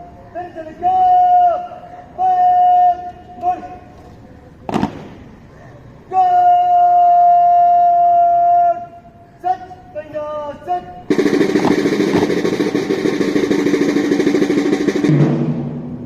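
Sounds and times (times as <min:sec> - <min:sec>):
drum roll with band: 0:11.1 - 0:16.0.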